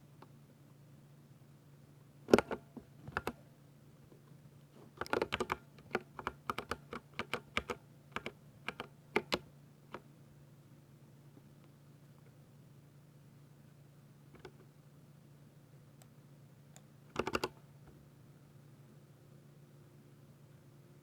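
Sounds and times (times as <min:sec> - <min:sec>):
mechanical keyboard typing: 0:05.0 - 0:09.4, 0:17.1 - 0:17.6.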